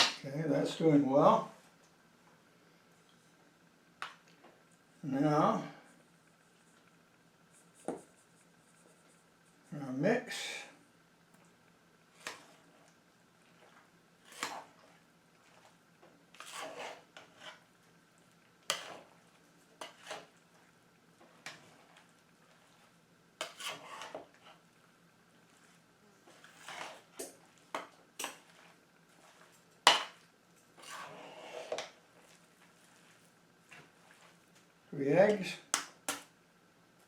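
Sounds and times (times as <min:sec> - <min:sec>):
spoon scraping a pot: 0:13.5 - 0:15.7, 0:16.3 - 0:17.7, 0:18.7 - 0:19.2, 0:19.8 - 0:20.4, 0:21.2 - 0:24.6, 0:26.3 - 0:34.4.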